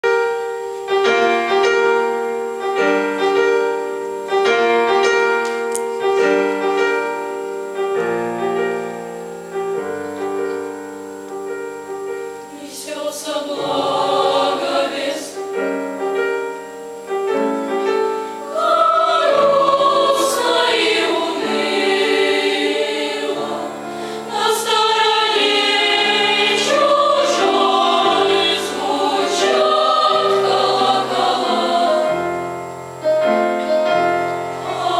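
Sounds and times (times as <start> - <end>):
piano chords: 0.0 - 34.9
children's choir singing: 12.2 - 16.0, 17.8 - 34.9.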